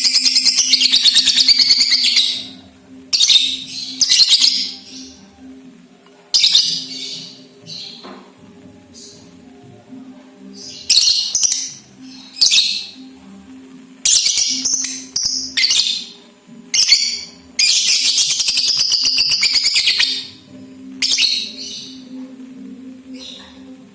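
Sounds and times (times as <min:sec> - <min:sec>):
lovebird shrill chirps: 0:00.0 - 0:02.6, 0:03.2 - 0:05.1, 0:14.1 - 0:16.1, 0:16.8 - 0:20.4
lovebird chattering trill: 0:16.8 - 0:20.4.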